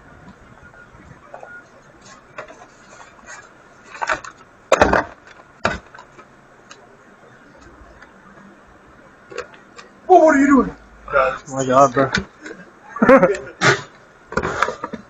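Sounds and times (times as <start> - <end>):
objects knocking and clattering: 3.9 - 6.3.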